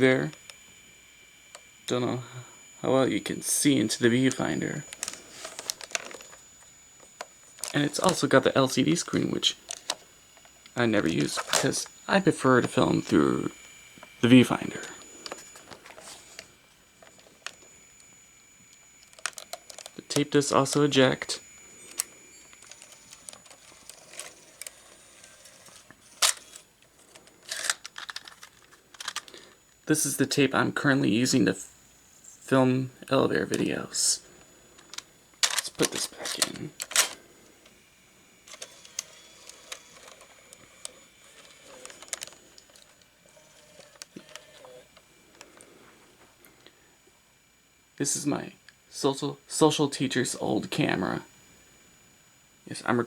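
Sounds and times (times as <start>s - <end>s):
plastic rattling: 4.9s - 6.4s, 7.0s - 8.2s, 9.6s - 11.9s, 19.0s - 20.9s, 21.8s - 29.5s, 34.8s - 37.2s, 38.5s - 44.8s
cassette compartment clicking open: 35.0s - 37.2s.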